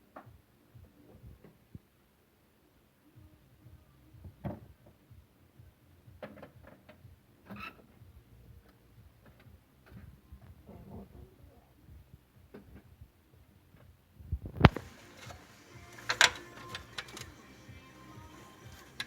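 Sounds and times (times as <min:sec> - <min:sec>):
clicks and clunks of tools: 0:14.6 - 0:17.4.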